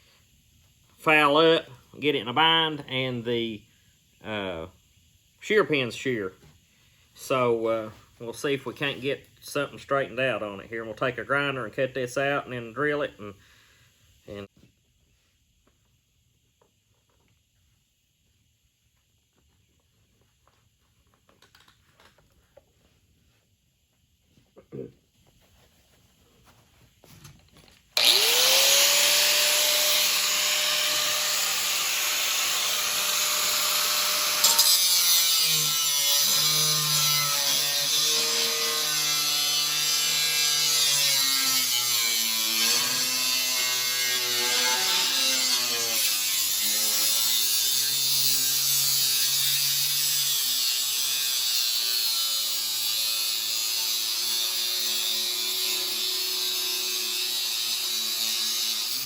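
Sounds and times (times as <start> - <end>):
angle grinder whining: 28.0 - 59.0.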